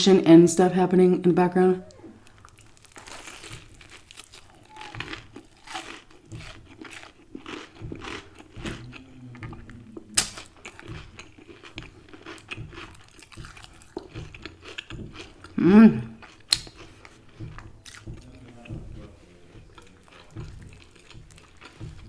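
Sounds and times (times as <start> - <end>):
person chewing crunchy fried chicken: 1.9 - 22.0.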